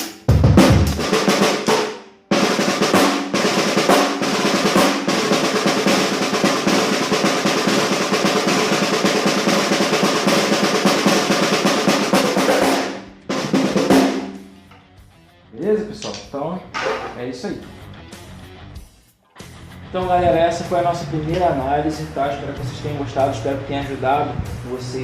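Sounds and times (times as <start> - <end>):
snare drum roll: 0.0 - 14.5
snare drum strokes: 0.0 - 14.6.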